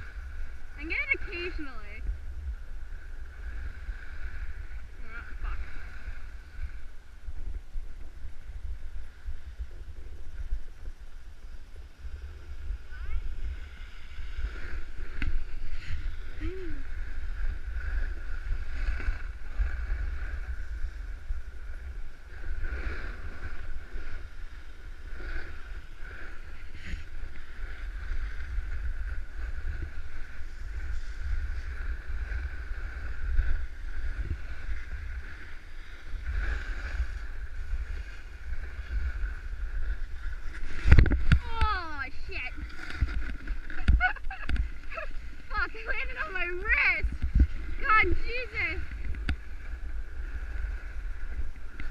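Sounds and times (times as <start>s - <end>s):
wind buffeting microphone: 0.0s - 51.9s
snowboard scraping over snow: 12.0s - 51.9s.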